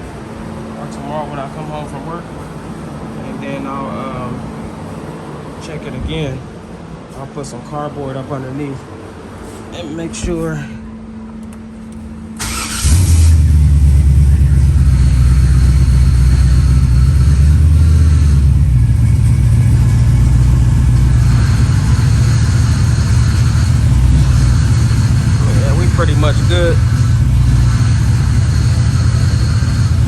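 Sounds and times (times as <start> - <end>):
car engine starter cranking: 12.4 - 13.7
car engine idling loudly: 12.5 - 30.0.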